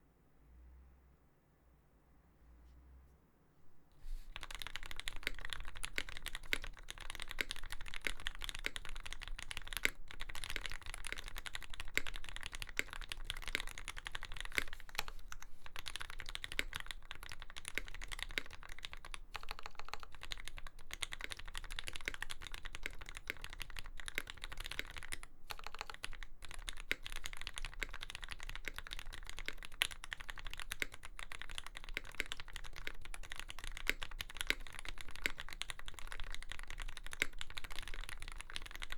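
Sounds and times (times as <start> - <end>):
fast typing on mechanical keyboard: 4.3 - 38.9.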